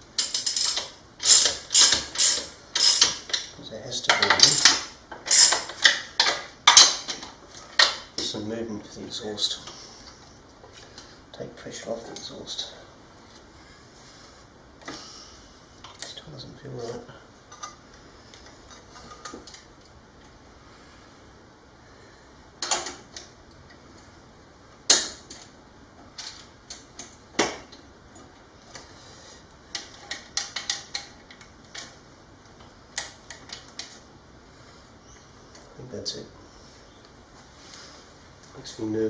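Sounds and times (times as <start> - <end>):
metal tools clinking and knocking: 0.2 - 3.5, 4.1 - 7.2.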